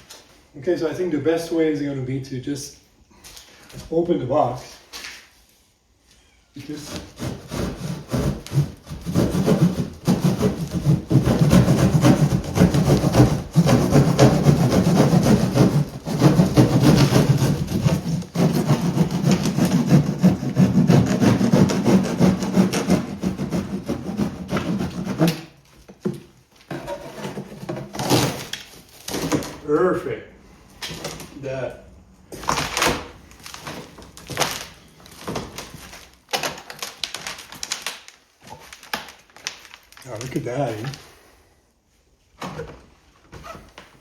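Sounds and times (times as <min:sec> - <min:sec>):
cardboard box being cut and torn: 0:06.8 - 0:25.5, 0:26.9 - 0:29.5.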